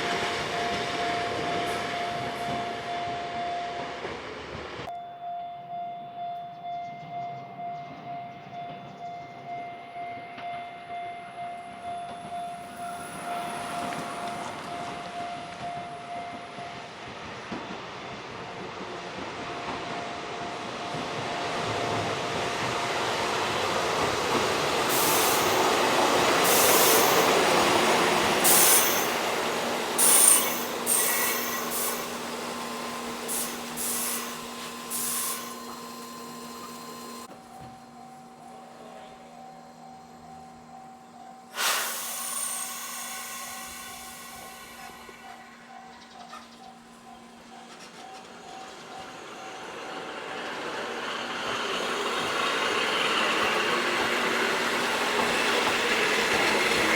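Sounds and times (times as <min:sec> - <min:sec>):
electric train passing: 0:00.0 - 0:56.9
sharp wheel squeals: 0:24.9 - 0:37.3, 0:41.6 - 0:46.8.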